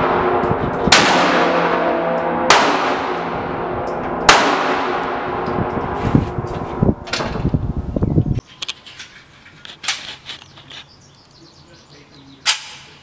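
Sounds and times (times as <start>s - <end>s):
gunshots with long echo: 0.0s - 5.8s.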